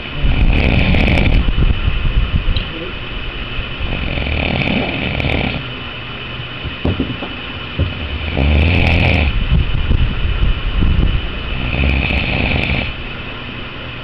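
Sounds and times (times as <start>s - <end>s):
person snoring: 0.3s - 1.4s, 3.8s - 5.6s, 8.1s - 9.3s, 11.5s - 13.0s.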